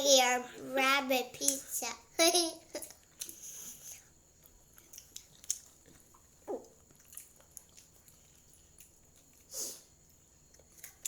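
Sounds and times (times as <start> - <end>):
chewing snack food: 2.8 - 11.0.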